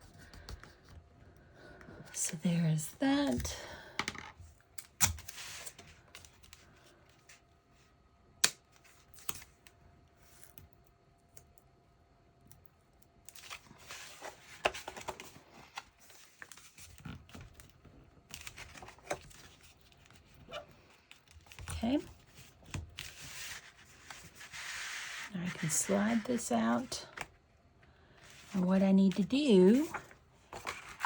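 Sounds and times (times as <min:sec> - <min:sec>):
paper rustling and scraping: 0:13.4 - 0:17.6, 0:18.4 - 0:26.9, 0:28.3 - 0:31.0.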